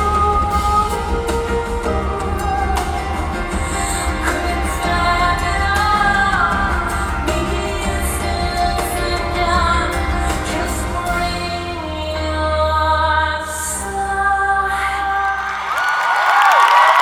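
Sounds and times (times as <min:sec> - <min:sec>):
drum and cymbal strokes: 0:00.0 - 0:11.8
woman singing: 0:00.0 - 0:15.7
live pop-rock band: 0:00.0 - 0:17.0.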